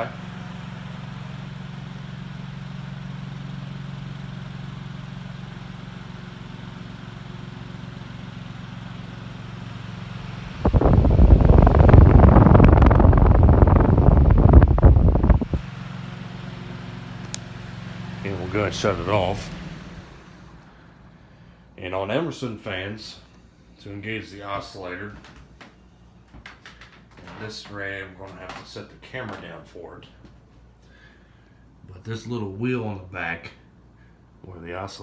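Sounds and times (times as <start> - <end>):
table fan motor hum: 8.9 - 21.7
fan air blasting microphone: 9.7 - 35.0.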